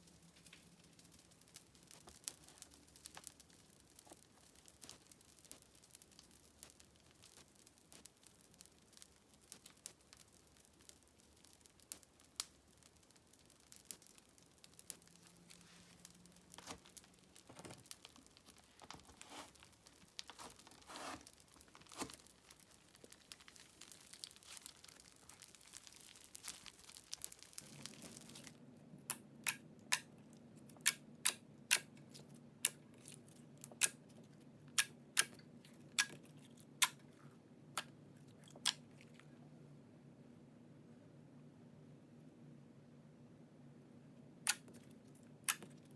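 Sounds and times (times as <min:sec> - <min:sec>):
faint steady hum: 0:00.0 - 0:45.9
sharp popping clicks: 0:34.7 - 0:37.0.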